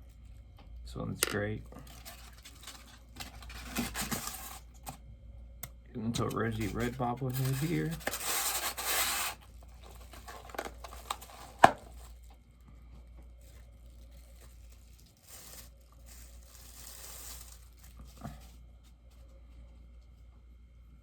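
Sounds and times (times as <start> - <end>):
packaging rustling and crinkling: 1.7 - 5.0, 6.2 - 12.4, 13.2 - 19.3.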